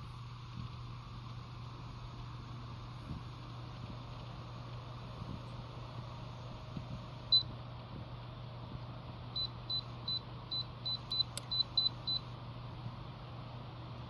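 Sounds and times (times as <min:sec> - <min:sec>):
steady low hum: 0:00.0 - 0:14.0
heater control panel beeping: 0:03.4 - 0:07.6, 0:09.3 - 0:12.4.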